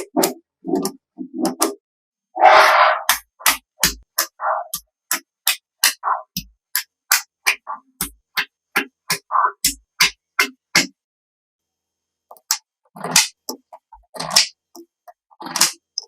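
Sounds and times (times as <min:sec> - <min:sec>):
percussive background music: 0:03.0 - 0:11.0.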